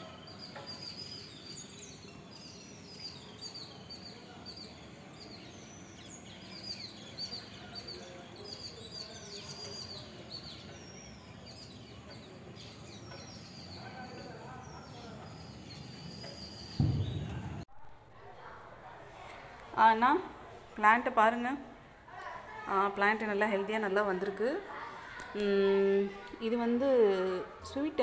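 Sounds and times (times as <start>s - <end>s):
small birds chirping: 0.0s - 17.6s
low outdoor background noise: 0.0s - 28.0s.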